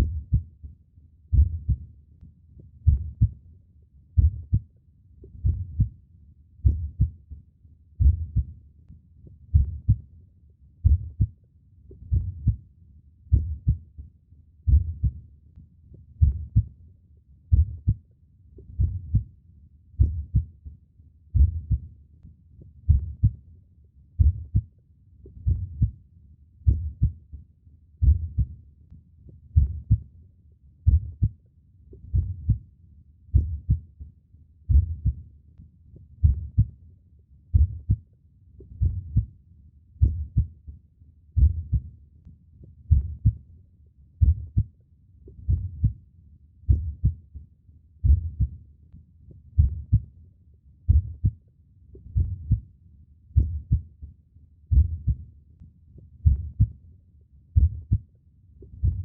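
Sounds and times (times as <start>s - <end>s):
slow heartbeat thumps: 1.3s - 1.9s, 2.7s - 3.4s, 4.2s - 4.6s, 5.2s - 6.0s, 6.6s - 7.2s, 8.0s - 8.6s, 9.4s - 10.0s, 10.8s - 11.3s, 12.0s - 12.6s, 13.3s - 13.8s, 14.7s - 15.2s, 16.1s - 16.7s, 17.5s - 18.0s, 18.6s - 19.3s, 20.0s - 20.6s, 21.3s - 21.9s, 22.8s - 23.4s, 24.2s - 24.7s, 25.3s - 26.0s, 26.6s - 27.3s, 28.0s - 28.6s, 29.5s - 30.0s, 30.8s - 31.3s, 32.0s - 32.6s, 33.3s - 33.8s, 34.7s - 35.2s, 36.2s - 36.7s, 37.5s - 38.0s, 38.7s - 39.3s, 40.0s - 40.5s, 41.4s - 41.9s, 42.9s - 43.4s, 44.2s - 44.7s, 45.3s - 46.0s, 46.7s - 47.2s, 48.0s - 48.6s, 49.5s - 50.1s, 50.9s - 51.4s, 52.0s - 52.6s, 53.4s - 53.8s, 54.7s - 55.2s, 56.2s - 56.7s, 57.6s - 58.0s, 58.7s - 59.0s.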